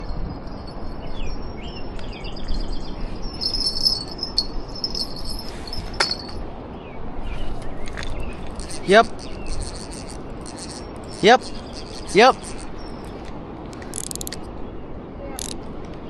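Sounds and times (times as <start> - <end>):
birds chirping: 0.0 - 13.3
insect trilling: 3.3 - 5.8, 8.5 - 13.0.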